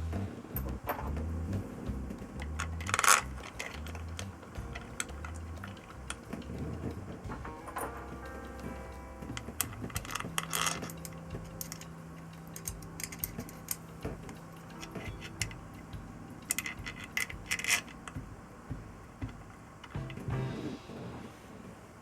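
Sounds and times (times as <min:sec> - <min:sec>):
metal tools clinking: 0:00.6 - 0:01.2, 0:02.4 - 0:18.2.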